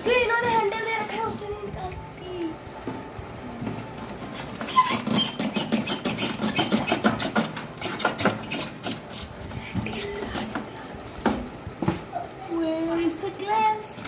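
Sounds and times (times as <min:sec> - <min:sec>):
packaging rubbing and scraping: 0:04.1 - 0:10.7.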